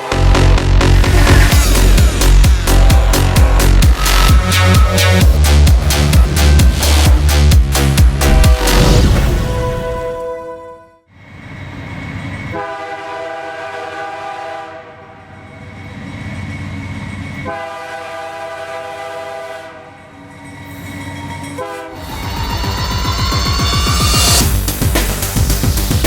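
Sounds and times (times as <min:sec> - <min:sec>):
locomotive air horn blasts: 0:00.0 - 0:11.0, 0:12.6 - 0:15.2, 0:17.4 - 0:20.1, 0:21.6 - 0:24.3
low rumble of passing train: 0:00.0 - 0:24.9.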